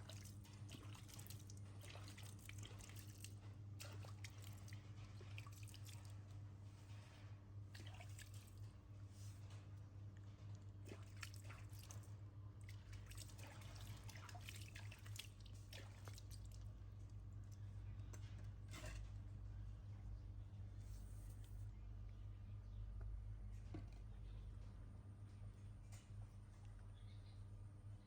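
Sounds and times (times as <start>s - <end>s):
wet drips: 0.0s - 6.4s, 10.2s - 18.2s
low steady hum: 0.0s - 28.0s.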